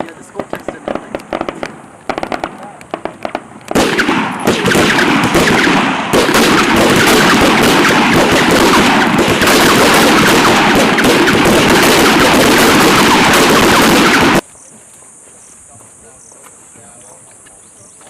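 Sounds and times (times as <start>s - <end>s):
rifles firing: 0.3s - 14.4s.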